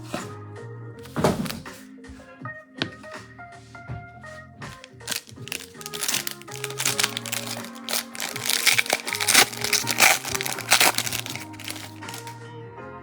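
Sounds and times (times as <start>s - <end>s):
background music: 0.0s - 13.0s
foil wrapper crinkling: 4.8s - 12.3s.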